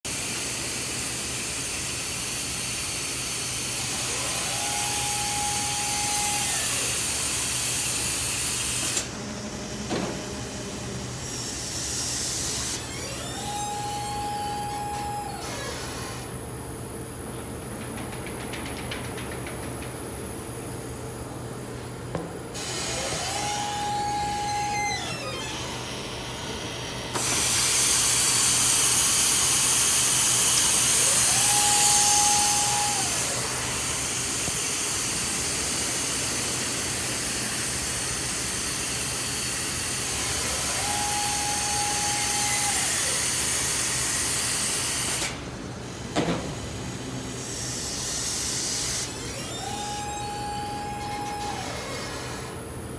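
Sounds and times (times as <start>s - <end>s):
motor whine: 3.8s - 7.7s, 8.8s - 16.9s, 22.1s - 34.6s, 39.7s - 43.8s, 48.0s - 52.9s
machine hum: 20.2s - 28.1s.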